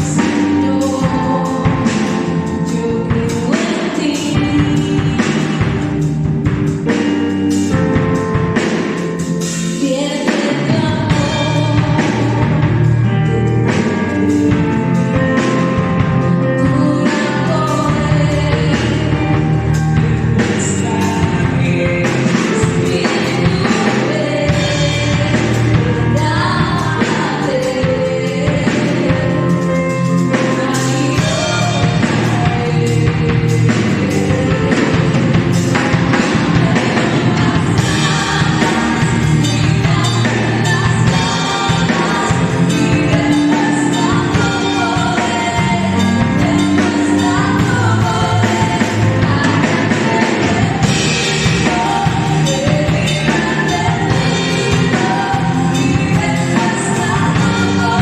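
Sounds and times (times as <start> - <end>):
full band with drums: 0.0 - 58.0
worship song singing: 0.0 - 58.0.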